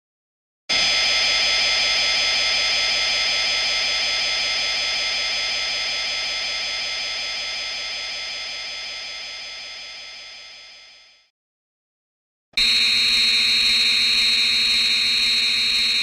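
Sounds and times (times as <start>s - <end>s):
sustained electronic tone: 0.8s - 11.3s.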